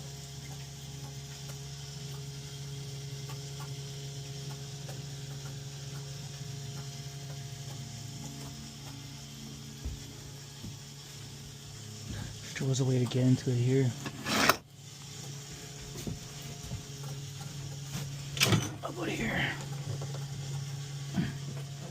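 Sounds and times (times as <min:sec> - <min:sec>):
electric pump humming: 0:00.0 - 0:21.9
faint ticks: 0:03.2 - 0:09.4.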